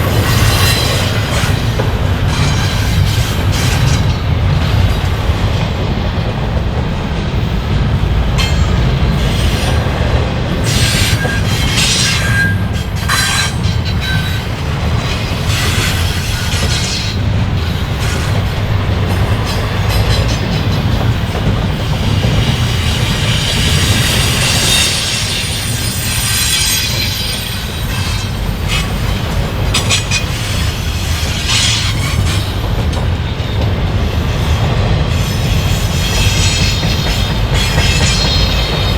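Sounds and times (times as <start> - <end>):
freight cars clanking: 0.0 - 38.9
train wheels rumbling on rail: 0.0 - 38.9
high-pitched wheel squeal: 10.7 - 14.5, 23.2 - 28.9.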